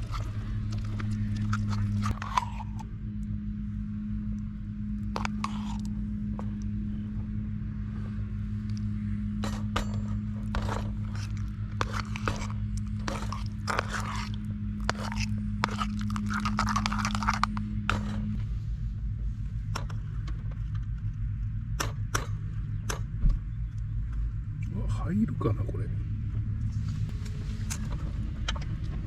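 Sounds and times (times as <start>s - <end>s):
steady low hum: 0.0s - 29.0s
scraping: 5.1s - 6.0s, 9.4s - 18.4s.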